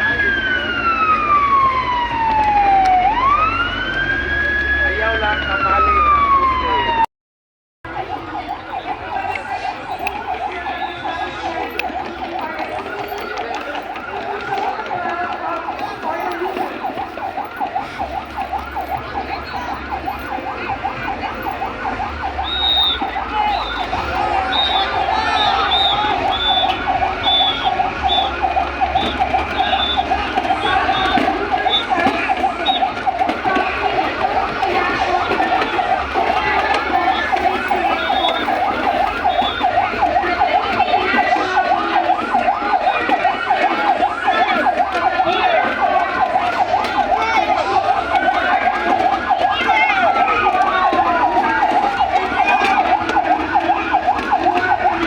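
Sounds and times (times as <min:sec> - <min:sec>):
siren yelping: 0:00.0 - 0:07.1, 0:07.9 - 0:55.0.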